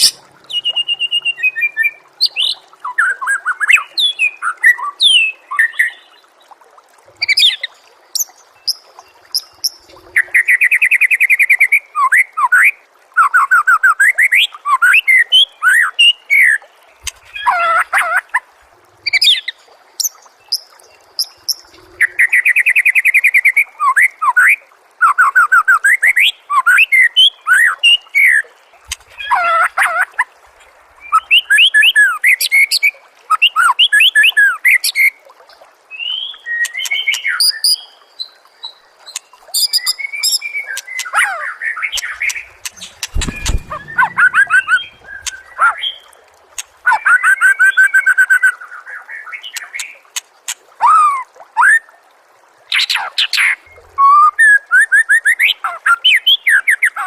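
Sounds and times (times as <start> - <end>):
low thump: 42.4 - 45.6.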